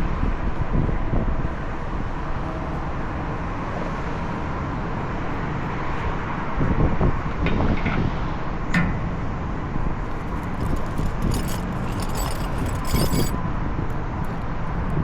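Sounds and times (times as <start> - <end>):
outdoor rumbling: 10.0 - 13.4.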